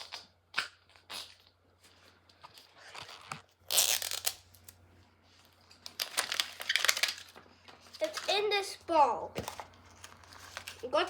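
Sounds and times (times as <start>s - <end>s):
packaging tearing: 3.0s - 4.8s, 5.8s - 7.4s, 9.9s - 10.9s.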